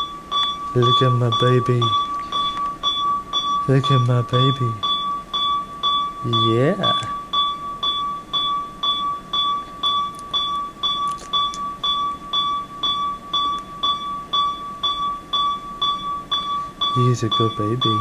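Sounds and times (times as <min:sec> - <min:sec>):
medical equipment beeping: 0:00.0 - 0:18.0.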